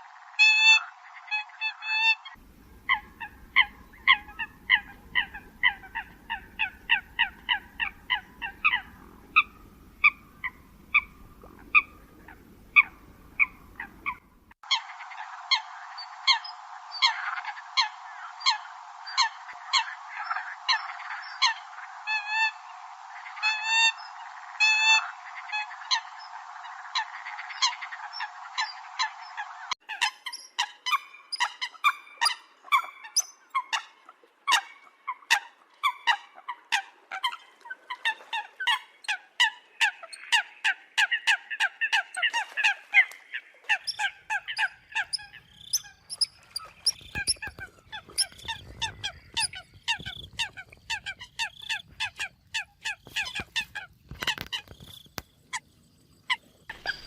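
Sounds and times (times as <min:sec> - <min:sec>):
faint low rumble: 0:02.4 - 0:29.7.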